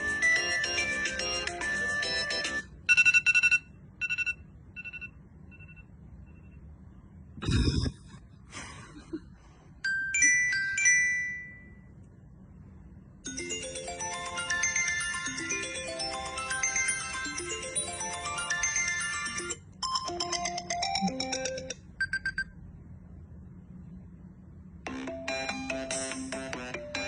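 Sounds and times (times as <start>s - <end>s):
melodic ringtone music: 0.0s - 2.8s, 9.9s - 11.8s, 13.3s - 21.9s, 24.9s - 27.0s
ringing chime tones: 9.9s - 11.9s, 13.3s - 21.7s.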